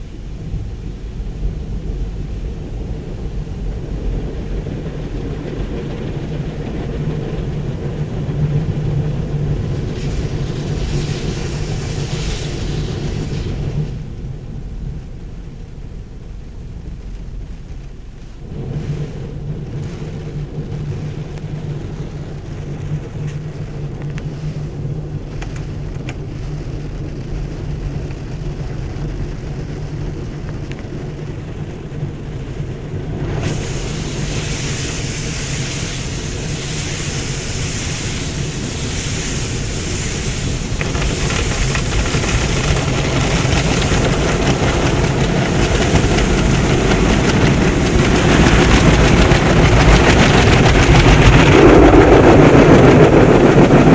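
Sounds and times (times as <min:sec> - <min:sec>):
car wash motor hum: 0:00.0 - 0:53.9
loud rushing hiss: 0:06.0 - 0:14.5, 0:31.1 - 0:53.8.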